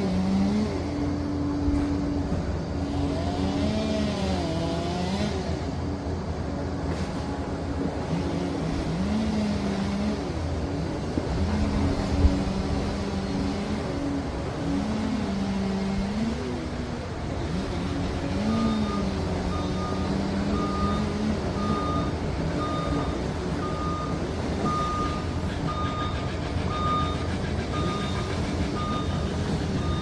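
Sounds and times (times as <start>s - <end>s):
diesel engine running: 0.0s - 30.0s
reversing alarm beeping: 18.4s - 30.0s.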